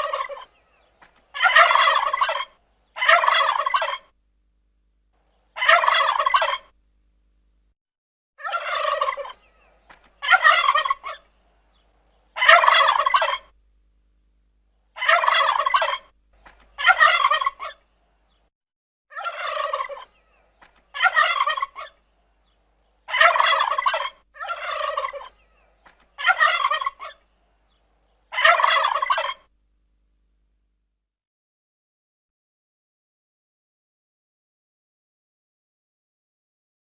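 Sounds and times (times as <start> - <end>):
turkey gobbling: 0.0 - 4.1, 5.5 - 6.8, 8.4 - 13.6, 15.0 - 17.9, 19.1 - 29.5.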